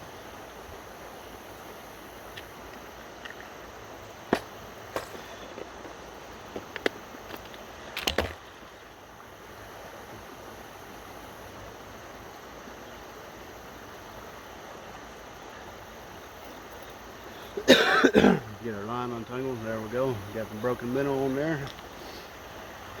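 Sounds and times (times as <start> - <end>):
river water rushing: 0.0 - 23.0
short bumps or rustles: 4.3 - 8.4.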